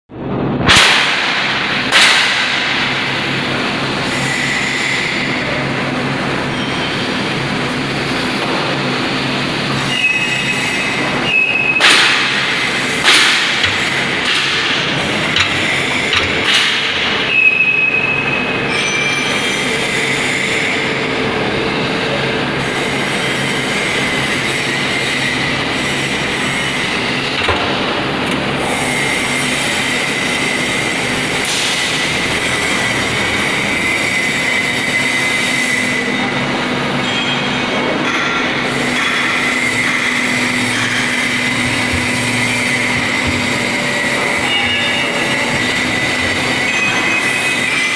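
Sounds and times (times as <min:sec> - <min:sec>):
baler machine running: 0:00.1 - 0:47.9
short high squeals: 0:09.8 - 0:11.8.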